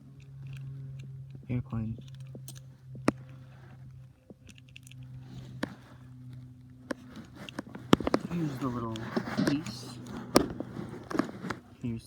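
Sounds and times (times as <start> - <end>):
steady low hum: 0.0 - 12.0
plastic toy parts clicking: 0.2 - 1.1.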